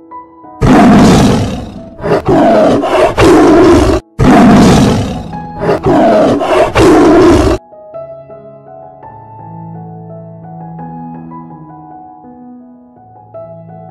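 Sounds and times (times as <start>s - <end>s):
soft piano music: 0.0s - 0.6s, 7.6s - 13.9s
large animal roaring: 0.6s - 7.6s.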